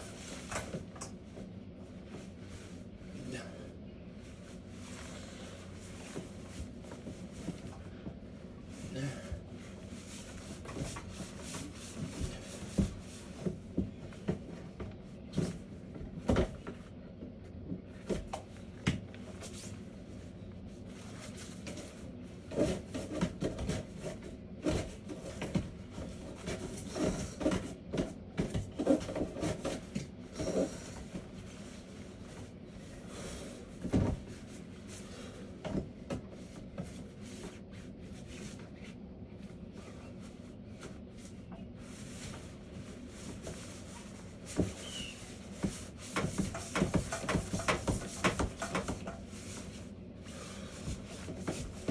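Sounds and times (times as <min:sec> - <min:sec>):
steady background hum: 0:00.0 - 0:51.9
brush knocking inside vent duct: 0:43.5 - 0:49.8.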